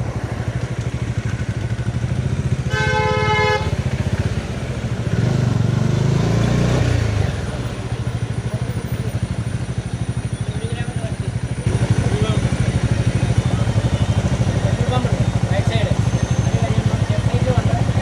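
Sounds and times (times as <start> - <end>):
passing engine noise: 0.0 - 10.3
motorcycle engine running: 0.0 - 18.0
vehicle horn: 2.5 - 5.2, 11.7 - 17.2.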